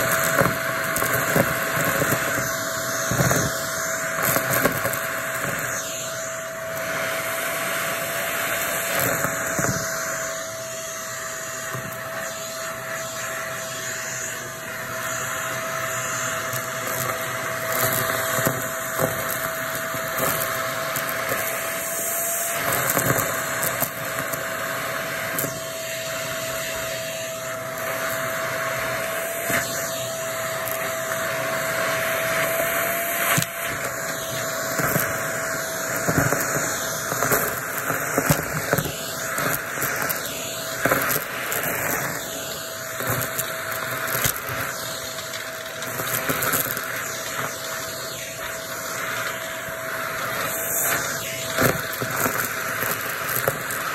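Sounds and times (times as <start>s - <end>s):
debris crackling through nozzle: 0.0s - 6.9s, 16.4s - 24.4s, 29.2s - 53.9s
vacuum cleaner motor whine: 0.0s - 53.9s.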